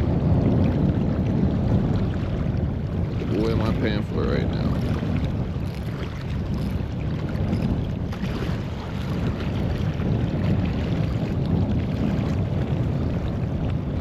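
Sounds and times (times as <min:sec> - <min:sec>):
wind buffeting microphone: 0:00.0 - 0:14.0.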